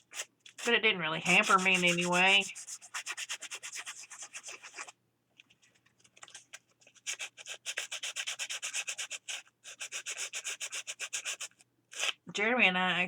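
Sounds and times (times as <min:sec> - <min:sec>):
sanding paper edges: 0:01.3 - 0:04.9, 0:06.9 - 0:12.1.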